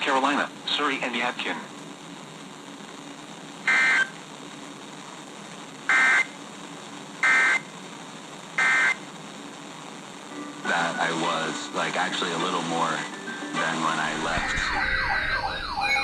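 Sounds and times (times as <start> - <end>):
faint radio hiss: 0.0 - 16.0
digital data tone bursts: 13.8 - 16.0.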